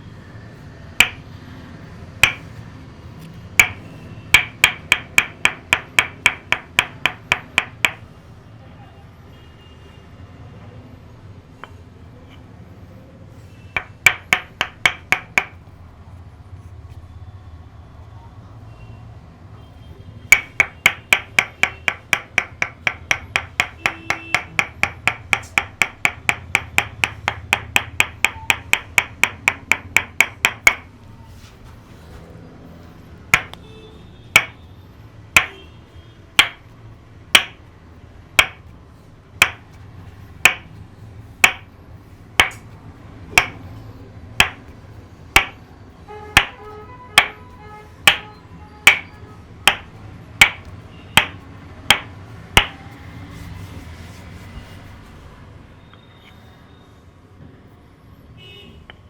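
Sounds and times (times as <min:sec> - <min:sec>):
wooden mallet tapping wooden wedge: 0:01.0 - 0:01.3, 0:02.2 - 0:02.6, 0:03.2 - 0:08.1, 0:13.8 - 0:15.7, 0:20.3 - 0:30.9, 0:33.3 - 0:33.6, 0:34.3 - 0:34.7, 0:35.4 - 0:35.6, 0:36.4 - 0:37.7, 0:38.4 - 0:38.7, 0:39.4 - 0:39.8, 0:40.4 - 0:40.8, 0:41.4 - 0:41.8, 0:42.4 - 0:42.7, 0:43.3 - 0:43.7, 0:44.4 - 0:45.6, 0:46.4 - 0:52.9.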